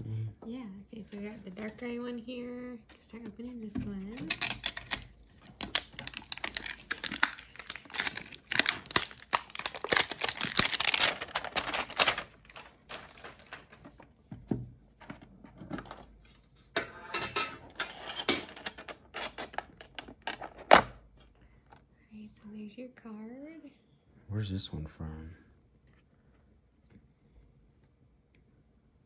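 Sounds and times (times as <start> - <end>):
plastic packaging crinkling: 4.1 - 14.2, 18.0 - 20.8.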